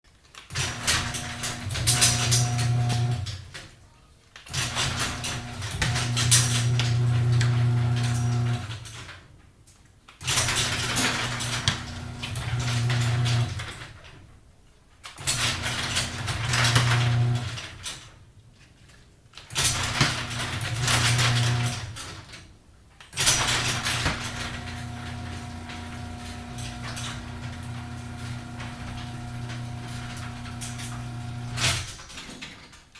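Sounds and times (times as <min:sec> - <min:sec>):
garage door opener motor humming: 0:00.5 - 0:03.6, 0:04.5 - 0:09.2, 0:10.2 - 0:14.1, 0:15.2 - 0:18.1, 0:19.6 - 0:22.3, 0:23.2 - 0:32.3
motor starting clunk: 0:00.6 - 0:03.5, 0:04.6 - 0:09.0, 0:10.3 - 0:13.8, 0:15.3 - 0:17.8, 0:19.6 - 0:22.1, 0:23.2 - 0:32.1.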